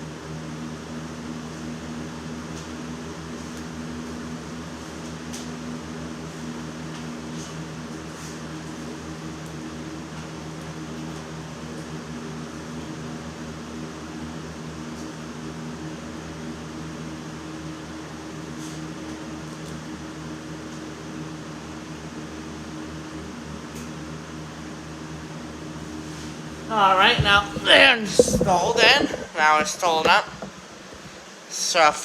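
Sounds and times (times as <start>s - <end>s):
electric fan humming: 0.0s - 32.0s.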